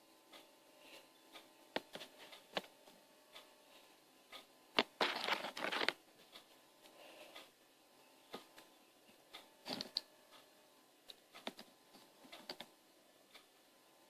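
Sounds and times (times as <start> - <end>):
rustling scrape: 5.0 - 6.0
toys clicking and knocking: 9.6 - 10.1, 11.4 - 11.7, 12.3 - 12.7.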